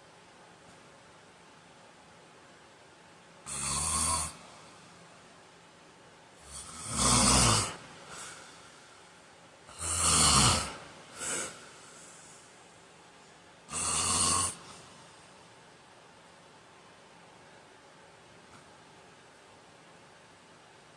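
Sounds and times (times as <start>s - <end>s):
man snoring: 3.4s - 4.5s, 6.4s - 8.4s, 9.7s - 11.8s, 13.7s - 14.8s
faint breath: 8.0s - 9.2s, 11.1s - 12.8s.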